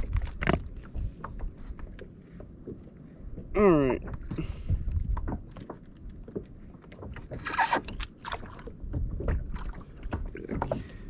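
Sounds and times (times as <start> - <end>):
water splashing: 7.0 - 11.0.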